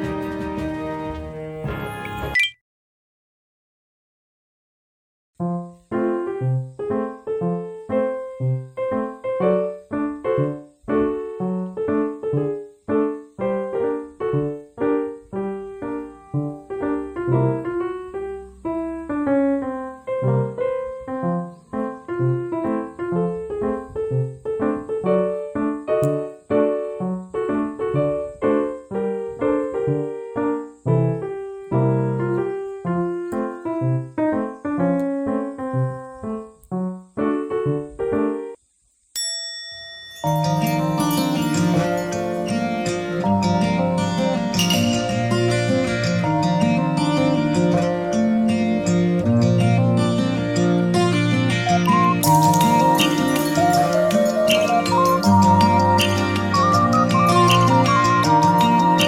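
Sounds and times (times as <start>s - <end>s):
piano-like keyboard music: 0.0s - 2.6s, 5.4s - 38.6s, 40.1s - 59.0s.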